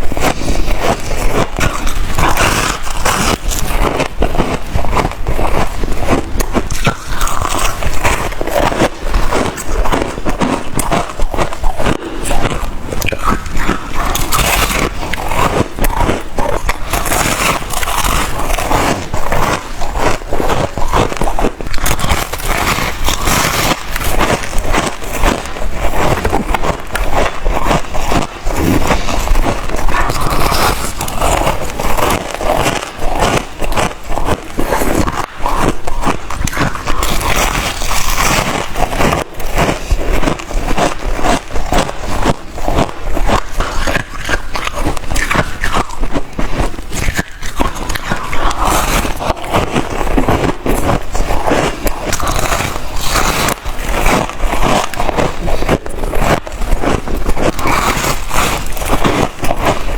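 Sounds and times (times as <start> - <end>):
ice being chewed: 0.0 - 59.9.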